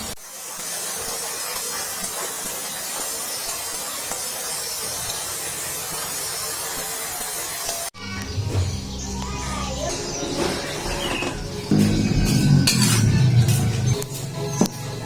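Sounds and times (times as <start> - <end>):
food sizzling in a hot pan: 0.1 - 7.9.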